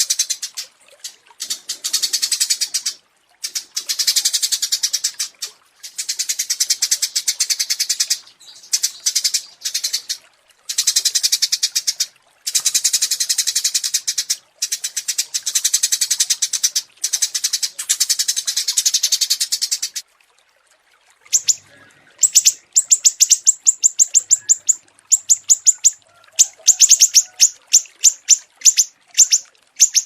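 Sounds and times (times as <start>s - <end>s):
songbird chattering trill: 21.4s - 21.6s, 22.2s - 26.0s, 26.6s - 30.0s.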